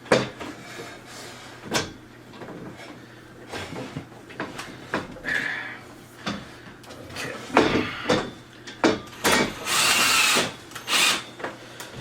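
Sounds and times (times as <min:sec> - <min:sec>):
power drill driving screws: 0:09.1 - 0:11.3.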